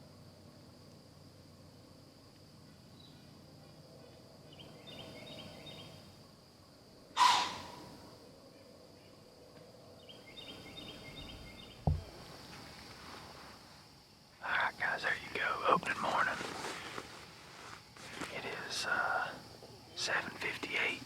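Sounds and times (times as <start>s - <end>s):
insects chirping: 0.0s - 21.0s
dull thump: 11.8s - 12.4s.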